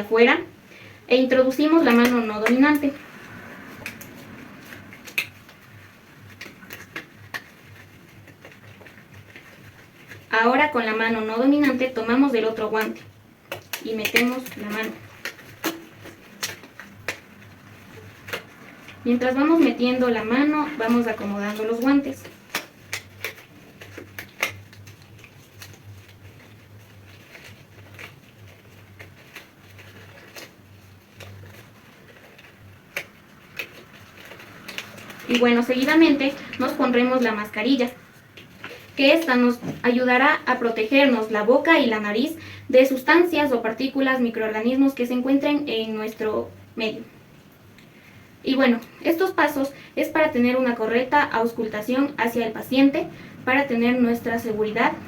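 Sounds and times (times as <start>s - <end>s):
glove rustling and clicking: 1.6s - 10.3s, 10.9s - 39.8s.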